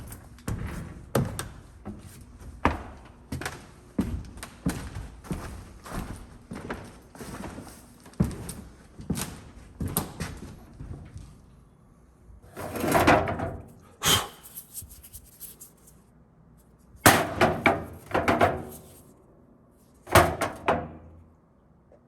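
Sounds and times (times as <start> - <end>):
hard knocks and clattering: 17.0 - 18.9, 20.1 - 21.1.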